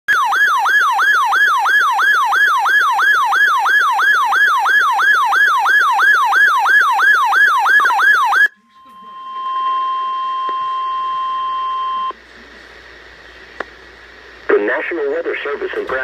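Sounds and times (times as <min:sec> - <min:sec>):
electronic siren sweeping tone: 0:00.1 - 0:12.1.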